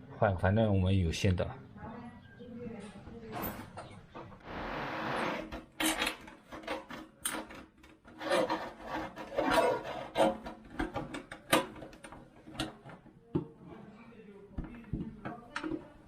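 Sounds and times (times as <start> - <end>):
metal scraping and rubbing: 4.4 - 12.9.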